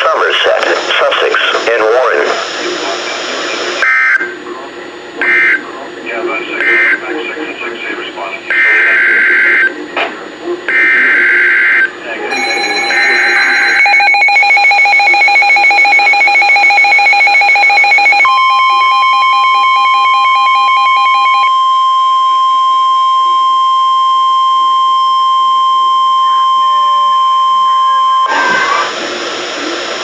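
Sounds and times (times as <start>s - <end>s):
steady weather alarm tone: 6.6s - 7.0s, 8.5s - 9.7s, 10.7s - 28.9s
rapid pulsing electronic beeps: 12.3s - 21.5s.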